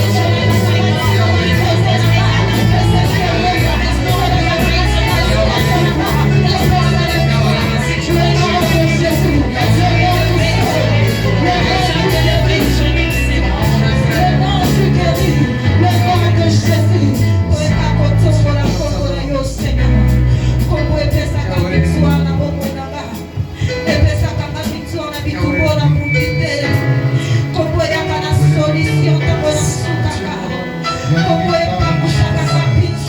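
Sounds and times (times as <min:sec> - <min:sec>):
people singing: 0:00.0 - 0:22.4, 0:23.9 - 0:33.0
steady drum beat: 0:00.0 - 0:26.4
bass notes: 0:00.0 - 0:33.0.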